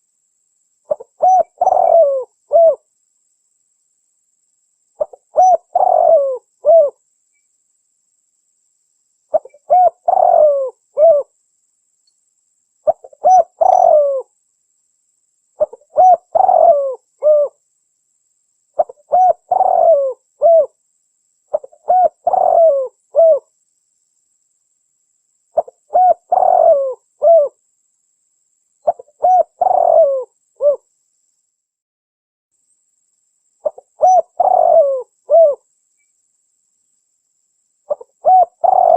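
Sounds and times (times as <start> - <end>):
dove cooing: 0.9 - 2.9, 5.0 - 7.0, 9.3 - 11.3, 12.9 - 14.3, 15.6 - 17.6, 18.8 - 20.8, 21.5 - 23.5, 25.6 - 27.6, 28.8 - 30.8, 33.6 - 35.6, 37.9 - 38.9.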